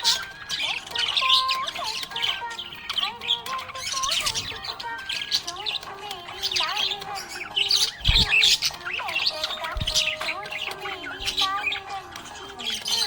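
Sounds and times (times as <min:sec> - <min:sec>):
budgerigar chirping and warbling: 0:00.0 - 0:13.0.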